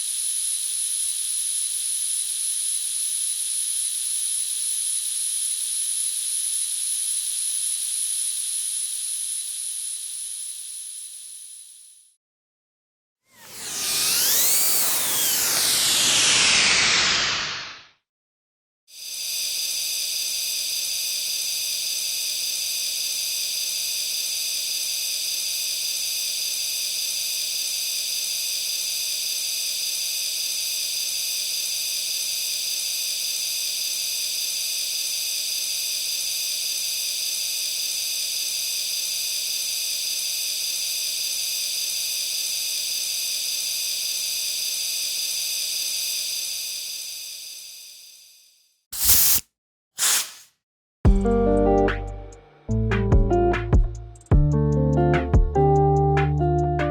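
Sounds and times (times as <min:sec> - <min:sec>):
pressurised gas hissing: 0:49.0 - 0:49.4, 0:50.0 - 0:50.5.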